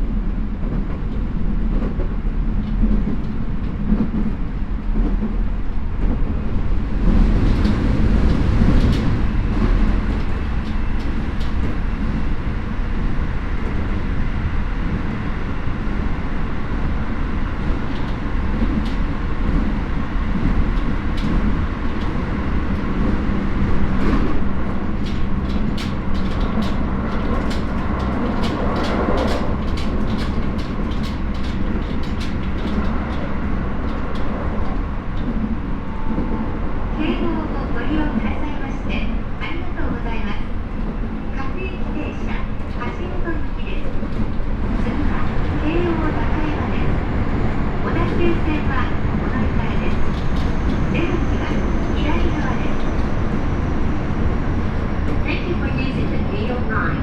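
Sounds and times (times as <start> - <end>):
train wheels rumbling on rail: 0.0 - 57.0
wheels clicking over track joints: 23.7 - 35.5.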